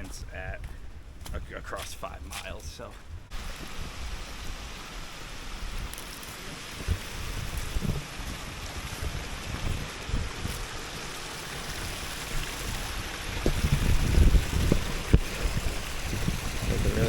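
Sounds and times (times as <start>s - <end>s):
water rushing in stream: 3.3s - 17.0s
dull low thumps: 6.7s - 10.8s.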